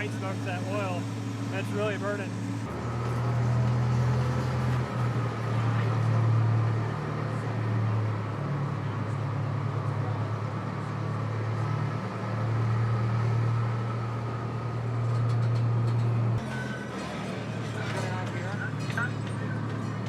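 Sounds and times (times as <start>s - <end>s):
people talking: 0.0s - 2.3s
train engine droning under load: 0.0s - 20.0s.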